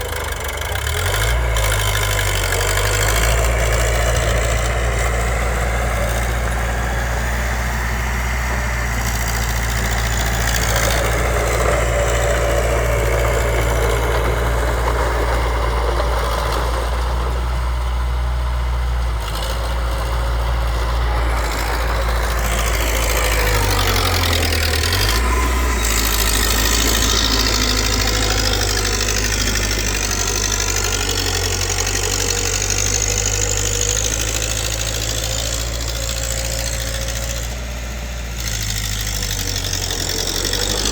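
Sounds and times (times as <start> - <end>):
diesel engine running loudly: 0.0 - 40.9.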